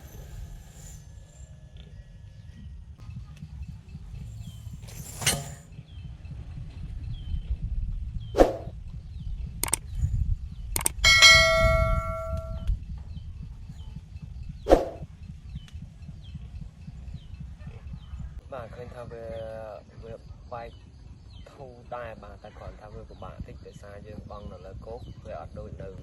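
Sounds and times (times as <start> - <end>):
metal object struck and ringing: 10.9 - 12.7.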